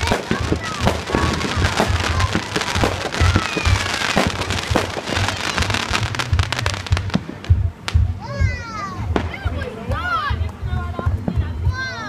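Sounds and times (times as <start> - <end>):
fireworks whistles: 0.0 - 7.2
low rumble: 0.0 - 9.6
fireworks bangs and crackles: 0.0 - 12.0.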